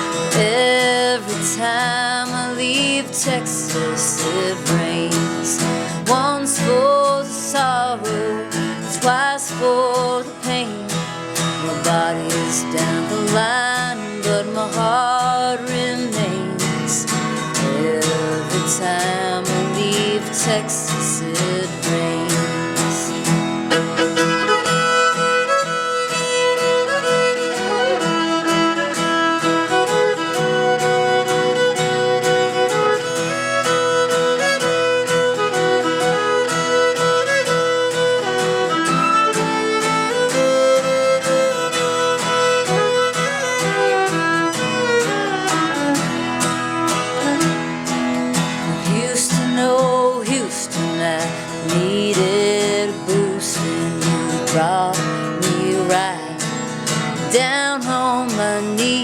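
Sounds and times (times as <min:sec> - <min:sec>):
strummed acoustic guitar: 0:00.0 - 0:59.0
fiddle sliding melody: 0:19.0 - 0:48.8.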